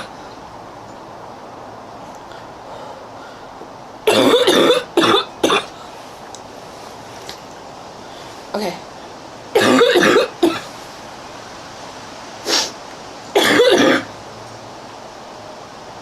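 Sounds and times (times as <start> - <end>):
woman coughing hard: 4.0 - 5.7, 9.6 - 10.7, 13.4 - 14.1.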